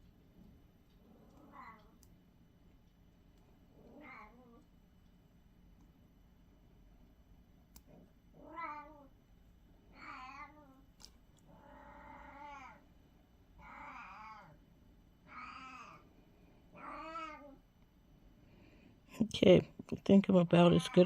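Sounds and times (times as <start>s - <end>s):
faint clicks: 0.0s - 4.0s
cat meowing: 1.2s - 2.0s, 3.9s - 4.6s, 8.4s - 9.1s, 9.9s - 10.8s, 11.6s - 12.8s, 13.6s - 14.6s, 15.2s - 16.0s, 16.8s - 17.6s.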